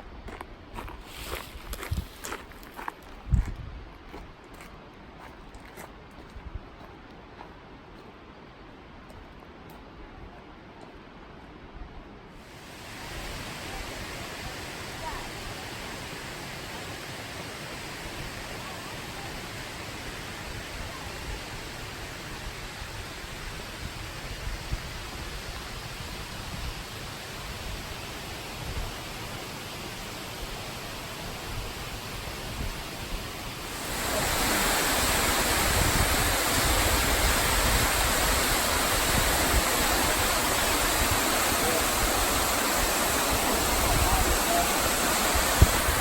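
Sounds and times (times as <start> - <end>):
falling water rushing: 12.4 - 46.0.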